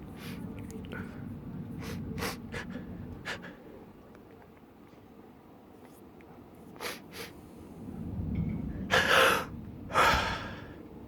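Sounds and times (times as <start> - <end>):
person sniffing: 6.8 - 7.4
gasping in-breath: 8.9 - 10.8.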